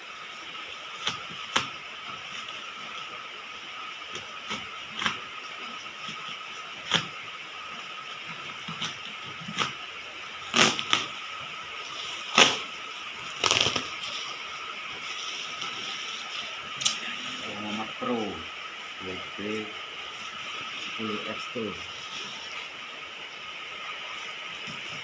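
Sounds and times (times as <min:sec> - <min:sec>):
faint hum: 0:00.0 - 0:25.0
cardboard package clicks and scrapes: 0:13.3 - 0:14.4.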